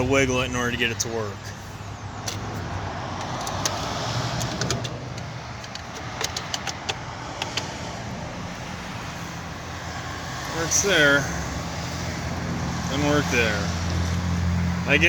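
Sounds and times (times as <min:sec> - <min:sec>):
clicks of connector being handled: 0:02.2 - 0:07.7.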